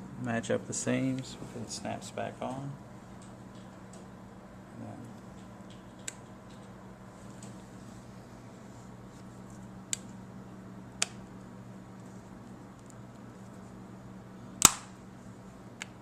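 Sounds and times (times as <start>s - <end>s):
faint steady hum: 0.0s - 16.0s.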